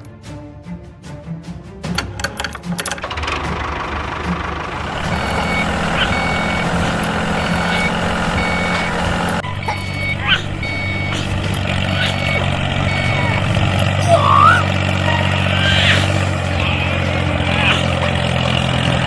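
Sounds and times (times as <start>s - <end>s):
truck engine running: 1.8s - 19.0s
reversing alarm beeping: 4.8s - 18.2s.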